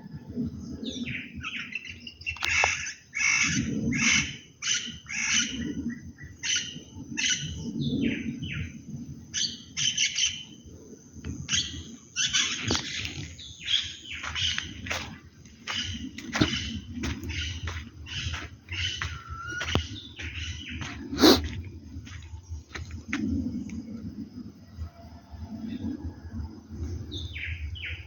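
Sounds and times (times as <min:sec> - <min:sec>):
birds chirping and squawking: 0:00.9 - 0:08.7, 0:11.4 - 0:23.6.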